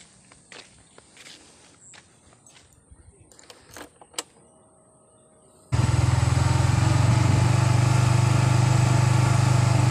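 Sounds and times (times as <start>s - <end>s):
motorcycle engine idling: 5.7s - 9.9s.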